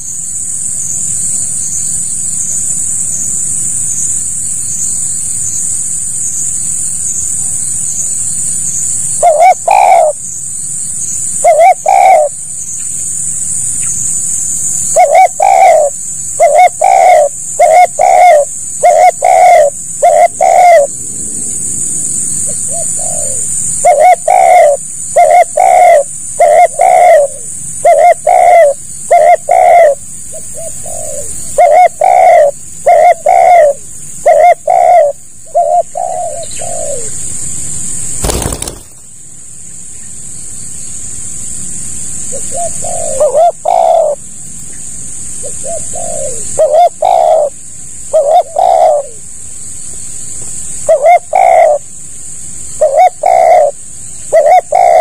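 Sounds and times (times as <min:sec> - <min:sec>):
steady high hiss: 0:00.0 - 0:55.0
doves cooing: 0:09.2 - 0:10.2, 0:11.4 - 0:12.4, 0:14.9 - 0:21.7, 0:22.4 - 0:37.2, 0:38.2 - 0:39.1, 0:42.3 - 0:44.2, 0:45.4 - 0:49.2, 0:50.9 - 0:51.8, 0:52.8 - 0:55.0.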